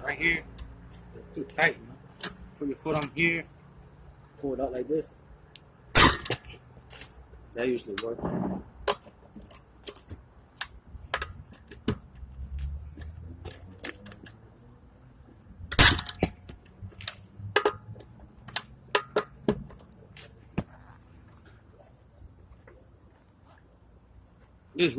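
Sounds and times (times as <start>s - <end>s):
lug wrench clicking and clanking: 2.2s - 3.2s, 8.9s - 12.0s, 15.7s - 20.0s.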